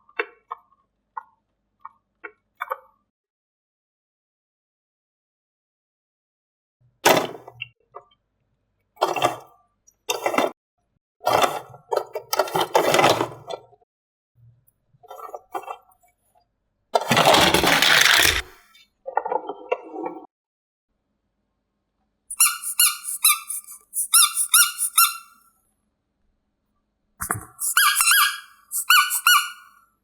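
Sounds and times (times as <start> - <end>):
toy pieces clinking and clattering: 17.4 - 18.6.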